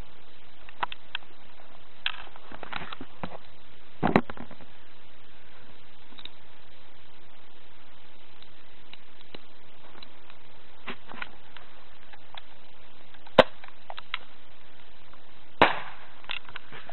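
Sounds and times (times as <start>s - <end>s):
steady hiss: 0.0s - 16.9s
air pistol crack: 15.6s - 16.1s
firecracker bang: 15.6s - 16.2s.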